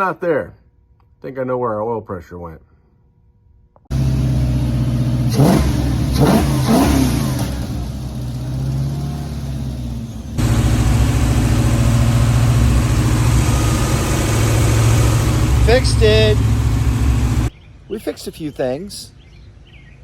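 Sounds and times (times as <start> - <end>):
car engine revving: 3.9 - 17.5.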